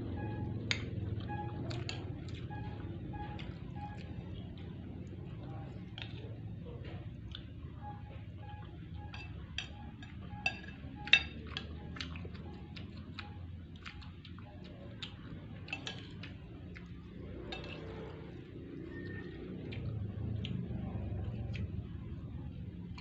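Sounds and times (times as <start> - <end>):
spoon clinking against dish: 9.0 - 12.4, 17.4 - 18.0.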